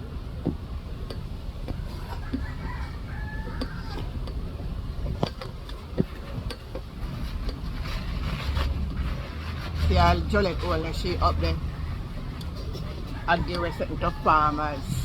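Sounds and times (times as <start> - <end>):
steady low rumble: 0.0 - 15.0
rooster crowing: 1.8 - 4.2, 12.9 - 14.9.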